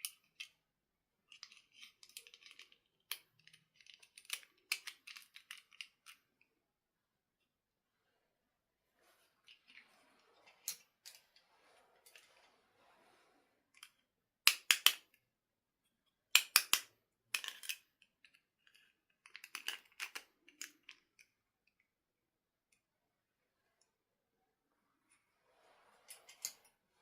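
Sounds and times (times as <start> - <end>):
plastic toy parts clicking: 0.0 - 0.6, 1.3 - 6.2, 13.8 - 15.1, 16.3 - 21.8.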